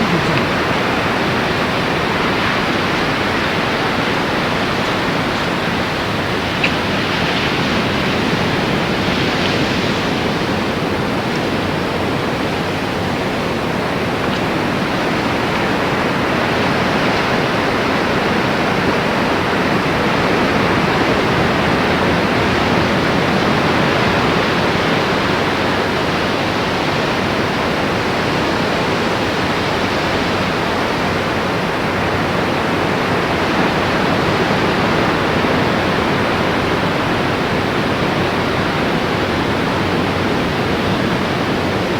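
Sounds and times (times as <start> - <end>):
ocean surf rushing: 0.0 - 26.2.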